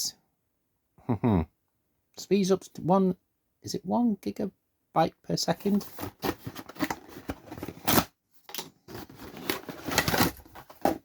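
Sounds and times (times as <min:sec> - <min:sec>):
cable packaging rustling: 0:05.6 - 0:11.0.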